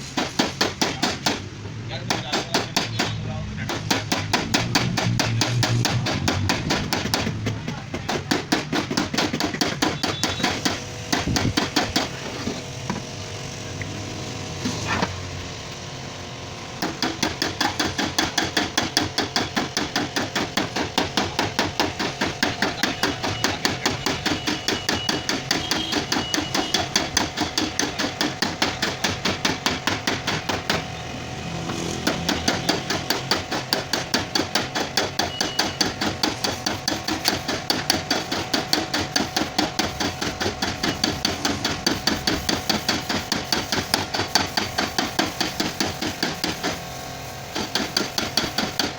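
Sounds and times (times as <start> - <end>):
hammer blows on sheet metal: 0.0 - 12.2.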